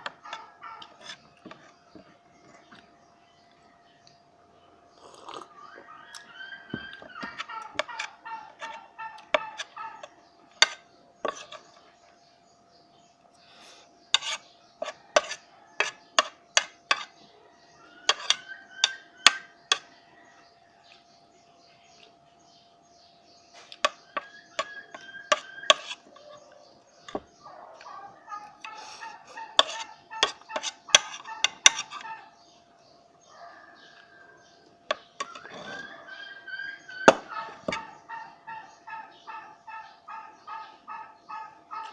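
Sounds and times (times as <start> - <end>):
animal clucking call: 5.7 - 10.2, 27.9 - 32.3, 35.2 - 41.9
cutlery clinking against a dish: 10.5 - 11.7, 14.1 - 17.2, 18.1 - 19.9, 23.7 - 26.3, 29.5 - 32.1, 34.9 - 35.9.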